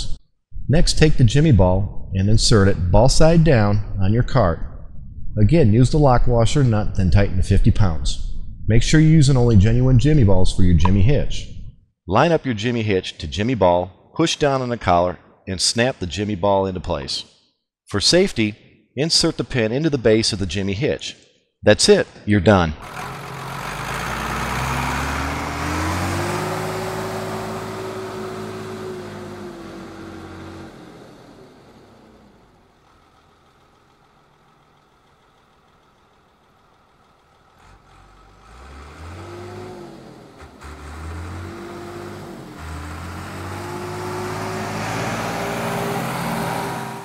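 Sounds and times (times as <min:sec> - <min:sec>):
lawn tractor engine revving: 0:22.8 - 0:34.7, 0:37.4 - 0:47.0.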